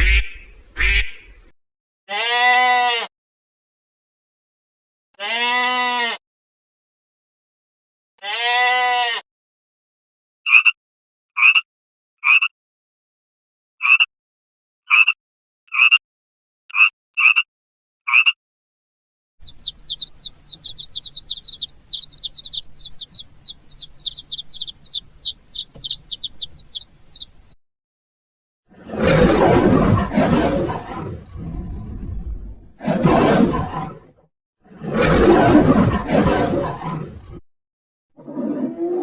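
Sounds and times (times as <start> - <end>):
bird chirps: 19.4 - 27.6
high falling bird twittering: 19.4 - 27.6.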